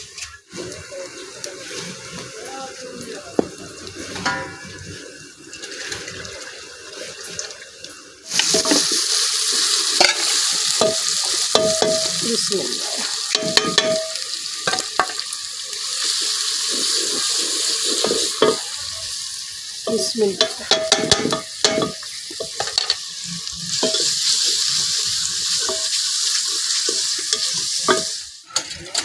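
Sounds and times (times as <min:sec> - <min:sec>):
food sizzling in hot oil: 0:00.0 - 0:07.5, 0:08.2 - 0:29.0
spoon scraping a pot: 0:23.7 - 0:24.2.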